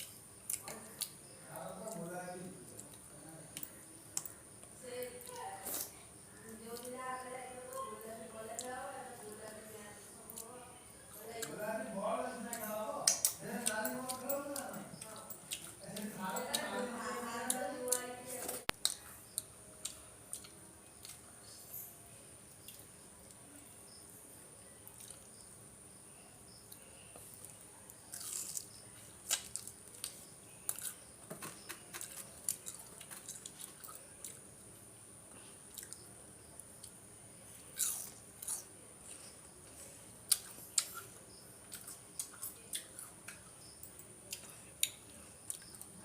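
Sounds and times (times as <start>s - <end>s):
person chewing food: 0.0s - 1.3s, 12.5s - 16.8s, 18.7s - 21.3s, 24.9s - 25.3s, 26.7s - 34.7s, 35.6s - 36.0s, 37.6s - 46.0s.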